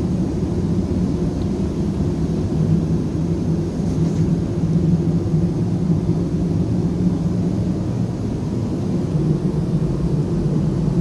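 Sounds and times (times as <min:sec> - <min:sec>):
low mechanical drone: 0:00.0 - 0:11.0.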